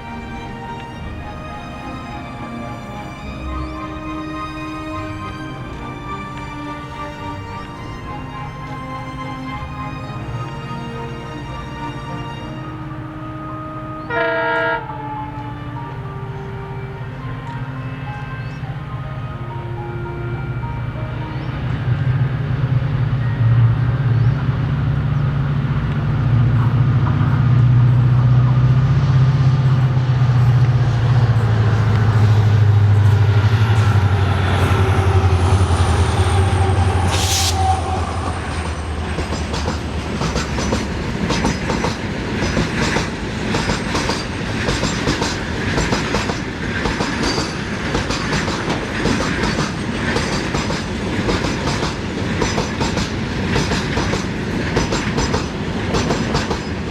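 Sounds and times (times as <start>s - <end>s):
locomotive engine hum: 0.0s - 56.9s
train wheels clacking on rails: 26.6s - 56.9s
brief sharp noise: 37.0s - 38.1s.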